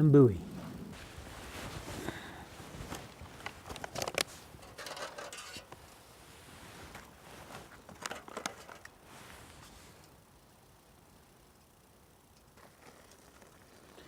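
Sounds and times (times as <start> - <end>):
camp gear clicking and rustling: 0.6 - 5.9, 6.6 - 10.2, 12.6 - 14.0.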